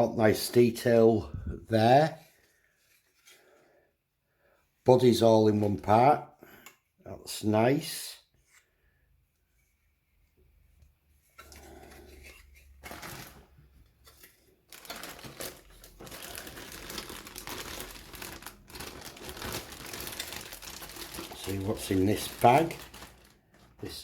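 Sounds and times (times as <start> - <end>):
plastic bag crinkling: 12.8 - 13.6, 14.6 - 24.0.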